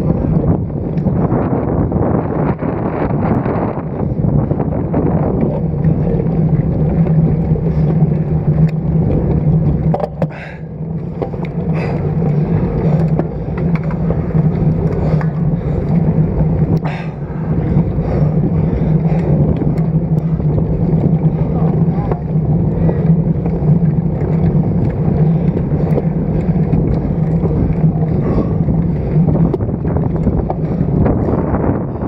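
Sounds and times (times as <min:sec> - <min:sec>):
wind rushing: 0:00.0 - 0:11.0, 0:11.6 - 0:32.0
road noise: 0:00.0 - 0:32.0.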